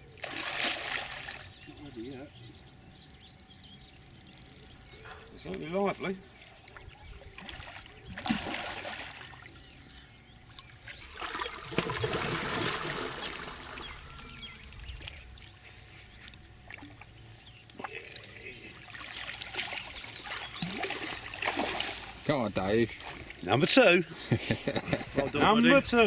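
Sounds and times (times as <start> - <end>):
water splashing and trickling: 0.0 - 2.1, 5.4 - 9.8, 10.4 - 14.1, 17.7 - 24.0.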